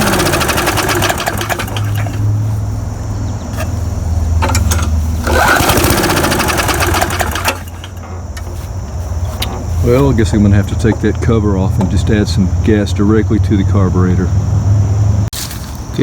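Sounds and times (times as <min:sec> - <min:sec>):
mower engine cranking without starting: 0:00.0 - 0:02.5, 0:03.5 - 0:12.4.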